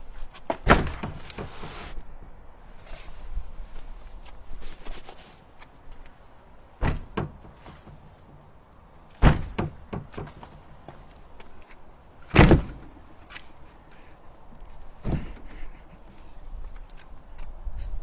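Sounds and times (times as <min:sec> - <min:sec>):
heavy dull body-hit thuds: 0:09.2 - 0:10.4.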